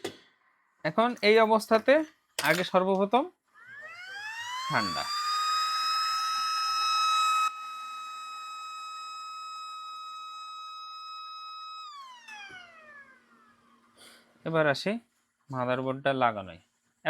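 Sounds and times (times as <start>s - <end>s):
hot air blower whining: 3.8s - 13.8s.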